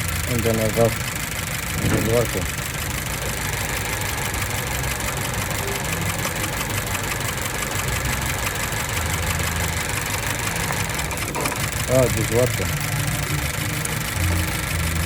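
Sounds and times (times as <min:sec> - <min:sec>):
car engine idling: 0:00.0 - 0:15.0
man talking: 0:00.3 - 0:01.0, 0:01.8 - 0:02.5, 0:11.8 - 0:12.8.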